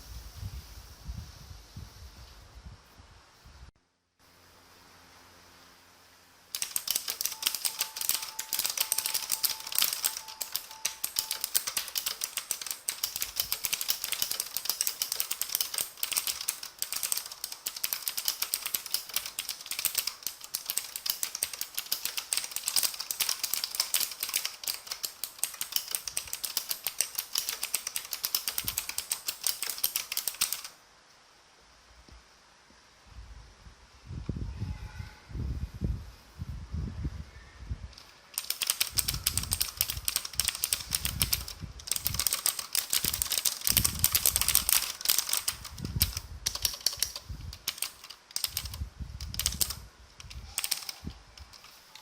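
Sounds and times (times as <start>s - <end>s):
mechanical keyboard typing: 6.5s - 30.8s, 38.0s - 52.0s.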